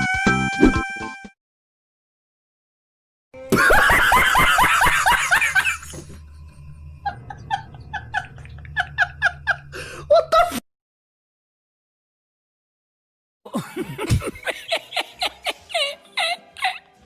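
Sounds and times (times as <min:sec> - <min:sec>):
chuckles: 0:13.5 - 0:16.9.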